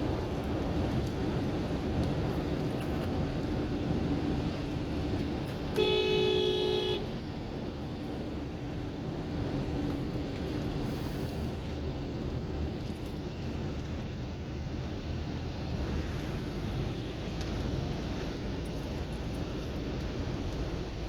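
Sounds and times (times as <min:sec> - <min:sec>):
car driving in rain: 0:00.0 - 0:21.0
two-tone car horn blast: 0:05.8 - 0:07.1.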